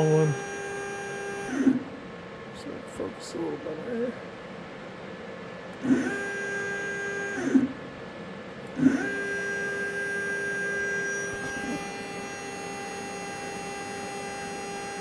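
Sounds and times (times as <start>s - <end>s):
drive motor whine: 0.0s - 1.8s, 5.8s - 7.8s, 8.7s - 15.0s.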